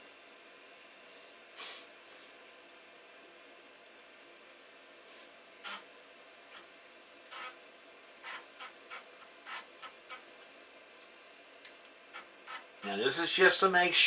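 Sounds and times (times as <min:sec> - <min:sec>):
steady hiss: 0:00.0 - 0:14.0
hard drive seeking: 0:05.6 - 0:05.9, 0:06.5 - 0:10.4, 0:12.0 - 0:13.2.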